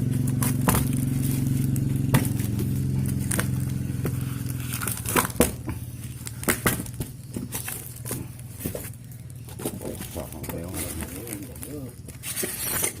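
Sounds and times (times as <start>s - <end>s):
engine humming: 0.0s - 13.0s.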